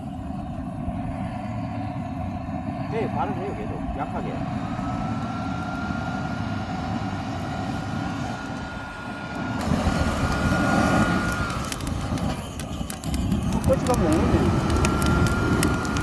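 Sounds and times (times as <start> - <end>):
blower air rush: 0.0 - 16.0
blower motor whine: 0.0 - 16.0
wood fire crackling: 0.0 - 16.0.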